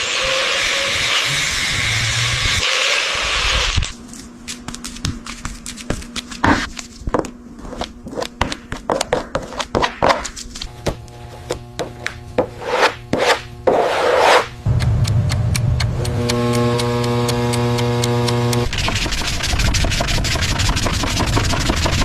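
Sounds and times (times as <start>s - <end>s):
rubbing and scraping: 4.8s - 14.9s, 16.3s - 22.0s.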